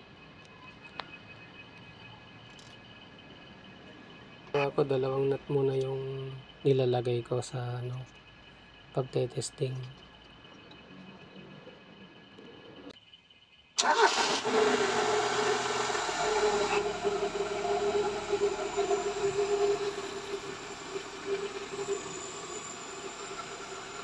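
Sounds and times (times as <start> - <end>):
car engine starting and idling: 13.8 - 24.0.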